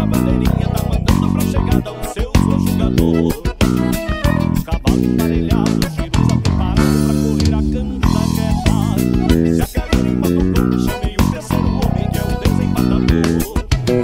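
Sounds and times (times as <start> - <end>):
dance music: 0.0 - 14.0
plucked electric bass line: 0.0 - 14.0.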